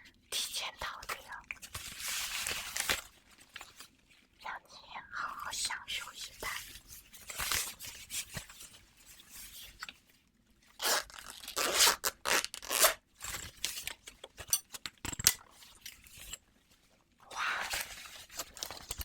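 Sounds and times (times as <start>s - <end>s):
tearing and scraping: 10.8s - 14.0s.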